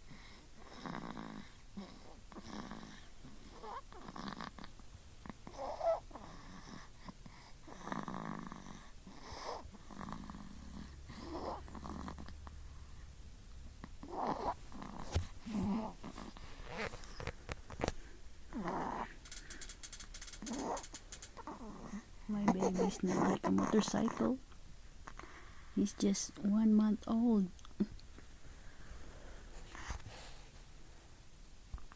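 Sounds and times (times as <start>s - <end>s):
baby snoring: 0.1s - 13.0s, 13.8s - 17.3s, 18.5s - 19.6s, 20.4s - 24.4s.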